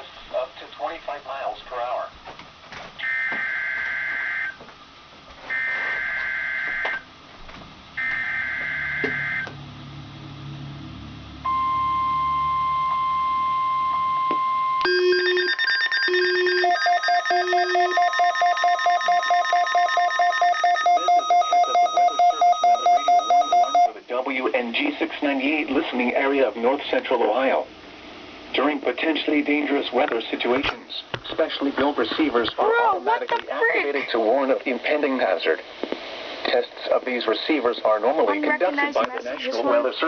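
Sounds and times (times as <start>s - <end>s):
warning alarm tone: 5.5s - 7.0s, 8.0s - 9.6s, 11.4s - 23.9s
electronic beeps and tones: 11.5s - 23.9s
data tone bursts: 11.5s - 24.0s.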